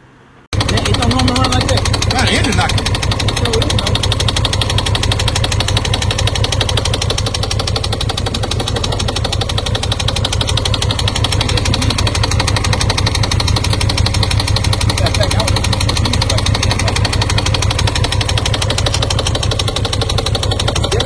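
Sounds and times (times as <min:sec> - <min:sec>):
motorcycle engine running: 0:00.5 - 0:21.0.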